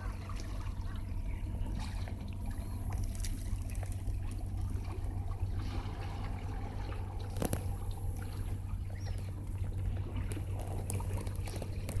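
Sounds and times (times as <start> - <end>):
steady low rumble: 0.0 - 12.0
water lapping and trickling: 0.0 - 12.0
small ticks: 7.4 - 7.7.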